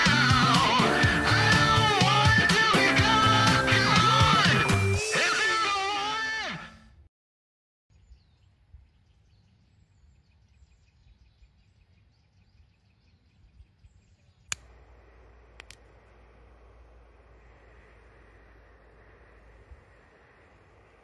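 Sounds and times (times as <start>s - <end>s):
faint bird chirps: 8.0s - 21.0s
sharp clicks: 14.5s - 21.0s
steady hiss: 14.5s - 21.0s.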